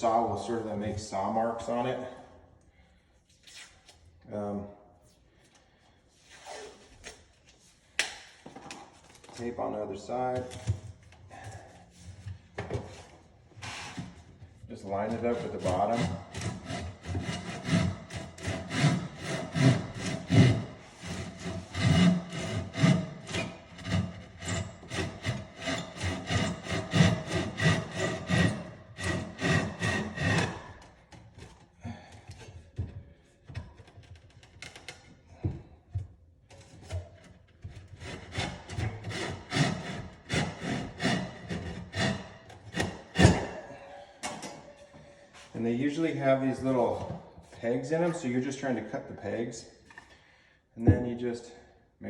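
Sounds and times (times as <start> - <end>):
hand saw cutting wood: 13.7 - 31.3, 36.8 - 43.7.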